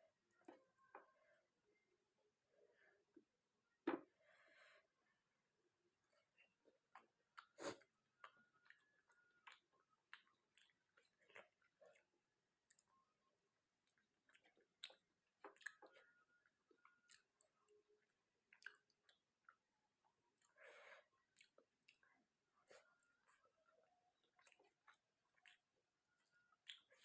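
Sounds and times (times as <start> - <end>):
person chewing: 6.9 - 19.6, 20.3 - 27.0.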